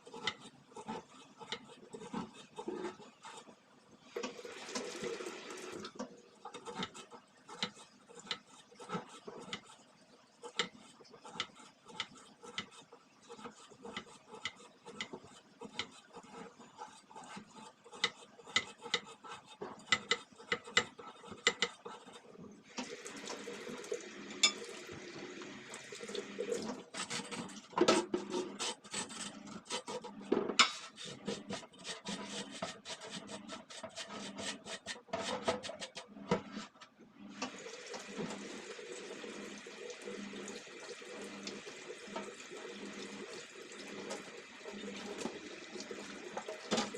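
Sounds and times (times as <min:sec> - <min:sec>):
tap water running: 0:04.1 - 0:07.0, 0:22.4 - 0:29.1, 0:37.2 - 0:46.9.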